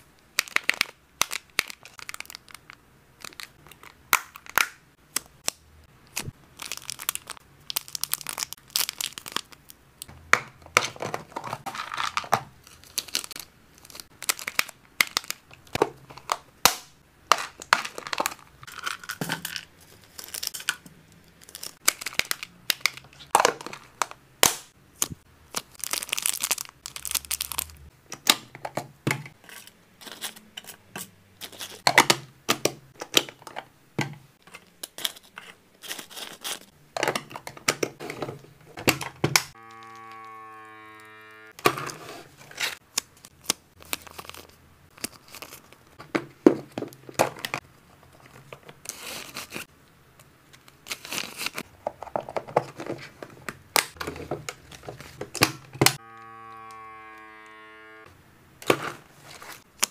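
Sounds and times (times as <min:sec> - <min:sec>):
wrappers crinkling and rustling: 0:00.4 - 0:04.0, 0:06.2 - 0:09.7, 0:25.5 - 0:27.8, 0:42.2 - 0:46.0
items clicking and knocking: 0:10.0 - 0:21.0, 0:21.7 - 0:25.2, 0:27.4 - 0:39.6, 0:41.6 - 0:49.6, 0:51.4 - 0:56.0, 0:58.6 - 0:59.9.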